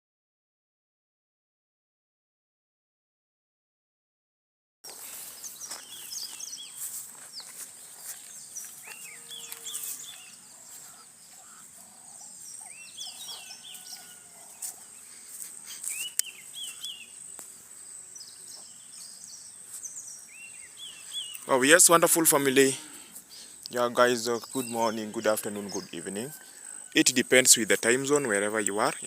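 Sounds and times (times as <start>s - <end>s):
birds chirping: 4.8s - 29.0s
high-pitched insect drone: 5.0s - 21.2s.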